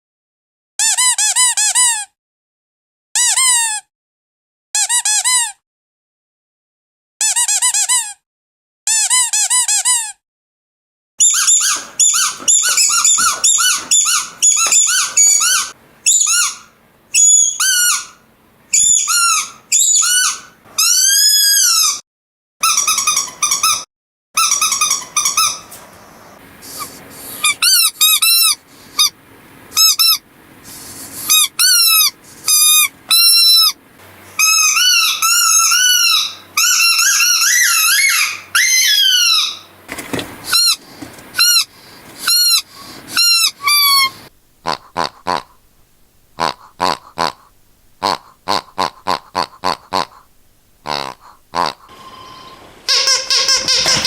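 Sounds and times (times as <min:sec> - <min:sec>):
squeaky dog toys squeaking: 0:00.8 - 0:02.1, 0:03.2 - 0:03.9, 0:04.8 - 0:05.6, 0:07.2 - 0:08.2, 0:08.9 - 0:10.2, 0:11.2 - 0:22.0, 0:22.6 - 0:25.8, 0:27.3 - 0:29.2, 0:29.8 - 0:30.2, 0:31.3 - 0:33.8, 0:34.4 - 0:39.8, 0:40.5 - 0:40.8, 0:41.4 - 0:45.4, 0:50.9 - 0:51.9, 0:52.9 - 0:54.0.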